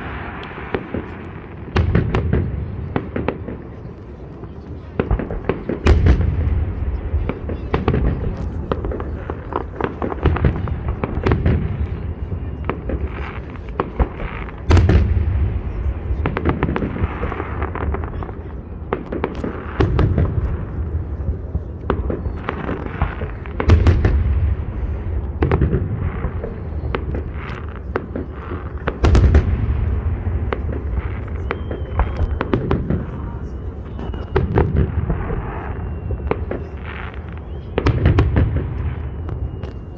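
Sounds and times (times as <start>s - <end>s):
fireworks booming: 0.0s - 39.9s
fireworks crackling and popping: 0.0s - 39.9s.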